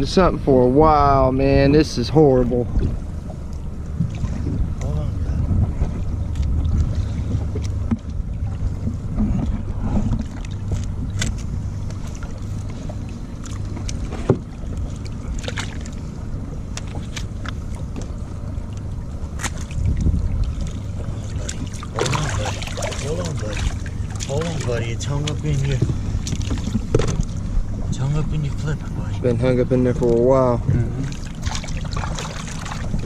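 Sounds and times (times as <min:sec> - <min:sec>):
boat motor idling: 0:00.0 - 0:33.0
wind on microphone: 0:02.4 - 0:03.2, 0:04.0 - 0:11.8, 0:19.7 - 0:23.8, 0:32.7 - 0:33.0.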